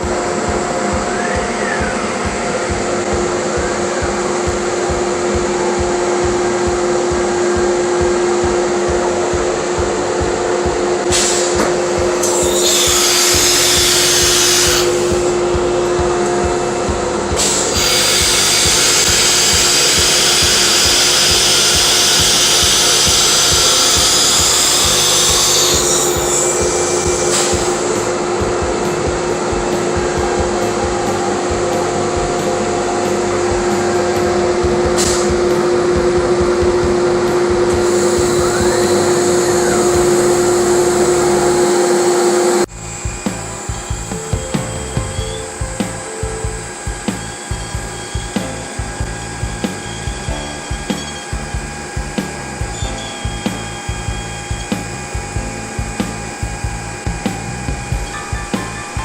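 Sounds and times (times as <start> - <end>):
dust collector rushing: 0.0 - 59.0
router spindle whine: 0.0 - 59.0
bit cutting wood hiss: 11.1 - 15.5, 17.3 - 34.4, 37.2 - 59.0.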